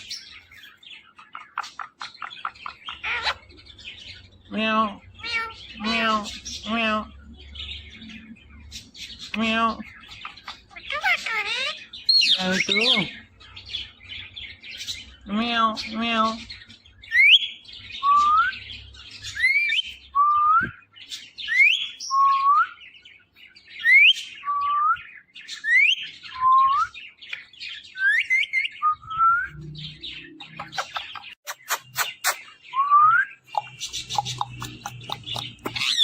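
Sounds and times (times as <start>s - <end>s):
parakeet whistled calls: 1.4s - 3.5s, 10.2s - 13.1s, 30.5s - 36.0s.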